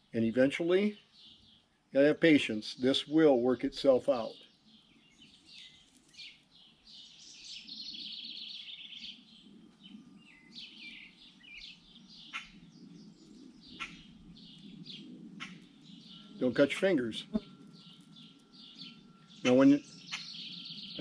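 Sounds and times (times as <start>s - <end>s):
songbirds chirping: 0.0s - 21.0s
bird trill: 4.2s - 21.0s.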